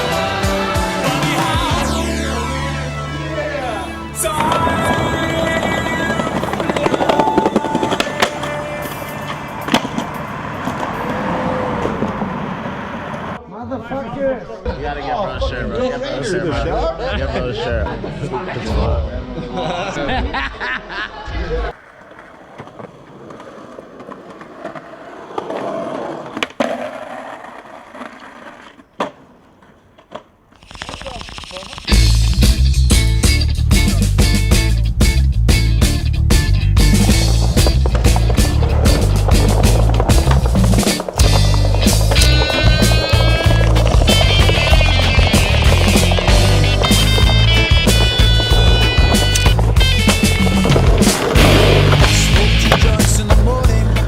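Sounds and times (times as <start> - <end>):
skateboard clacks: 0.0 - 2.0, 3.5 - 13.4, 21.7 - 32.6, 35.8 - 54.0
background music: 0.0 - 9.8, 31.9 - 54.0
skateboard wheels rolling on pavement: 0.0 - 13.4, 21.2 - 54.0.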